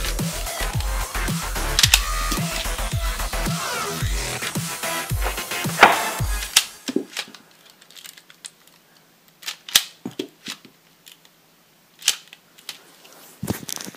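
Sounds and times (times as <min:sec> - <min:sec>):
plastic toy gun clicks and snaps: 0:01.8 - 0:02.8, 0:05.8 - 0:07.4, 0:09.3 - 0:11.3, 0:12.0 - 0:12.8.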